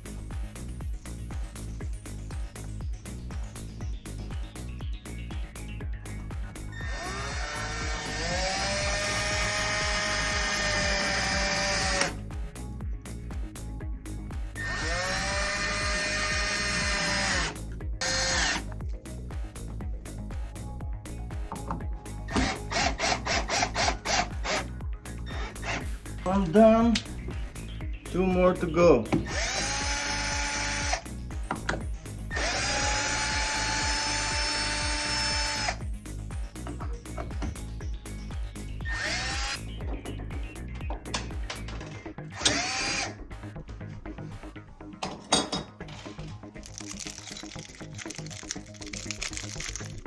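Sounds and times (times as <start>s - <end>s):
background music with steady beat: 0.0s - 50.0s
power drill driving a screw: 6.8s - 12.2s, 14.6s - 18.7s, 22.3s - 24.7s, 25.3s - 25.9s, 29.2s - 31.0s, 32.3s - 35.8s, 38.8s - 39.6s, 42.4s - 43.2s.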